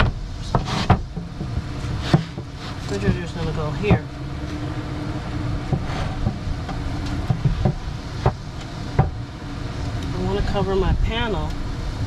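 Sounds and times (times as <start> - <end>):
steady low rumble: 0.0 - 12.0
wooden boards knocking: 9.0 - 9.2.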